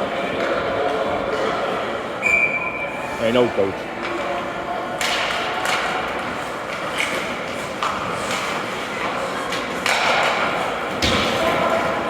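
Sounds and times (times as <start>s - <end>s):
arena background murmur: 0.0s - 7.5s
hockey sticks and puck clacking: 4.9s - 12.0s.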